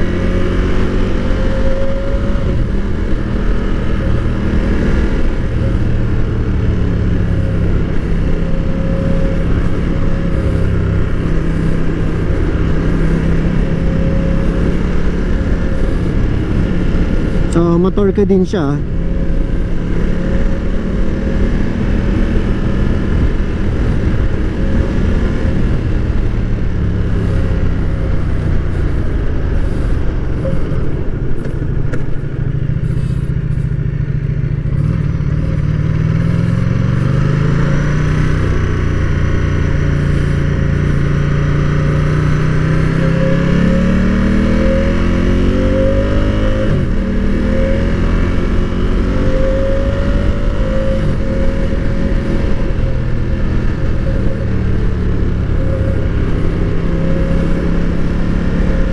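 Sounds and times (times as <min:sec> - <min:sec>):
motorcycle engine accelerating: 0:00.0 - 0:58.9.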